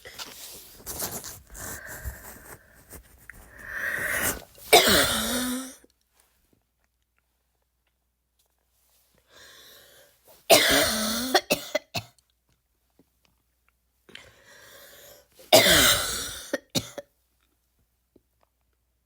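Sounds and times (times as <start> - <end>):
breath drawn in: 0.0 - 5.4
person barking coughs: 4.7 - 5.7, 10.5 - 12.1, 15.6 - 17.0.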